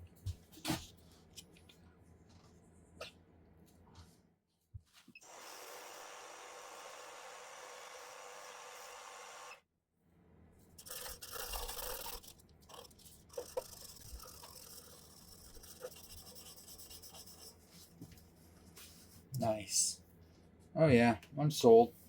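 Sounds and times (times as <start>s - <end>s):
sanding hiss on lathe: 5.2s - 9.5s
sandpaper rubbing and scraping wood: 10.8s - 17.6s.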